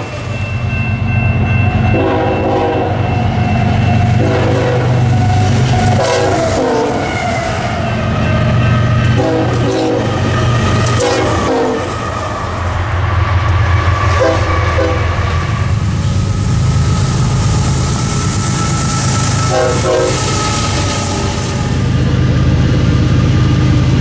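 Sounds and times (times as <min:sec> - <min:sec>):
locomotive air horn blasts: 0:01.9 - 0:03.0, 0:04.2 - 0:05.1, 0:05.8 - 0:07.1, 0:09.1 - 0:12.0, 0:14.2 - 0:15.3, 0:18.4 - 0:21.8
diesel engine low drone: 0:08.1 - 0:24.0.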